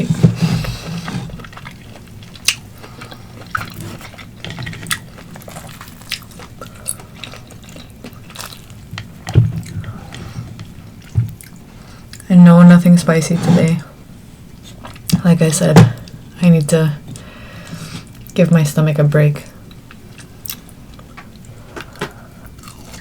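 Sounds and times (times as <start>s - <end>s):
wet chewing and mouth clicks: 1.3s - 12.3s.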